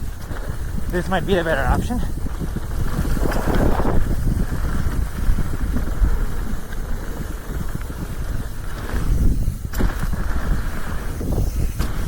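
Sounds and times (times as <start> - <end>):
faint bike ticks: 0.0 - 12.0
wind buffeting microphone: 0.0 - 12.0.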